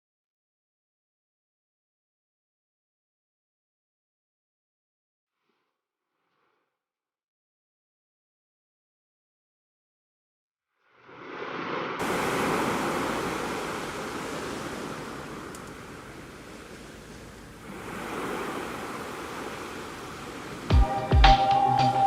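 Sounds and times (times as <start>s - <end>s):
sea waves washing onto shore: 11.0s - 22.0s.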